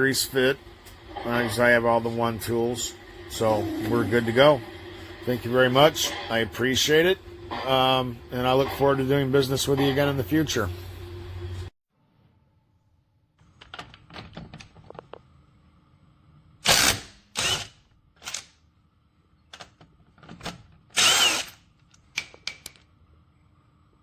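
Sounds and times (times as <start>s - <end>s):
impact wrench motor spinning: 16.7s - 17.8s, 21.0s - 21.6s.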